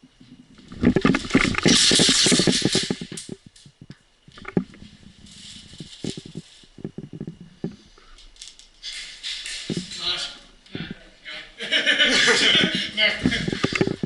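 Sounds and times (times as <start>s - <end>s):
rustling: 0.3s - 11.0s.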